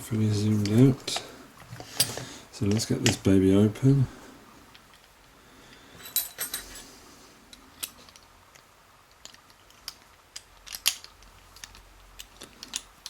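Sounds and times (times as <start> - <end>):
metallic clicks and clinks: 6.0 - 6.9, 9.1 - 13.0.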